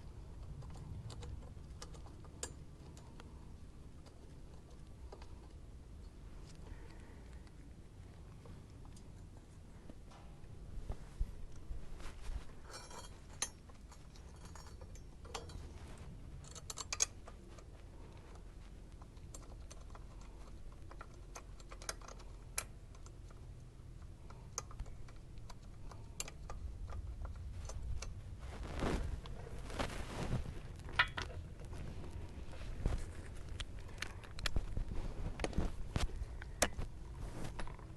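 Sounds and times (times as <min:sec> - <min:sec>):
scraping rustles: 0:08.2 - 0:20.8, 0:27.0 - 0:37.9
parts rattling: 0:30.8 - 0:31.7.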